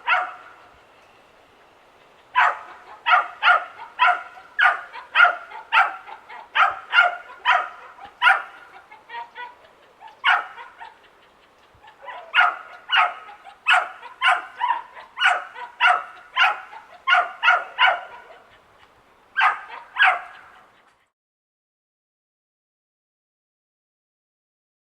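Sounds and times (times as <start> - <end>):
dog barking: 0.0 - 0.6, 2.4 - 11.0, 11.8 - 18.6, 19.3 - 20.8.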